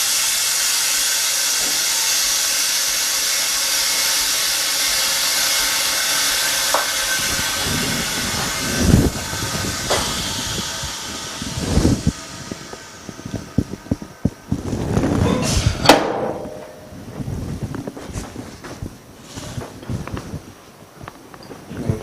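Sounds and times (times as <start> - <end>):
air hissing from chamber: 0.0 - 16.2.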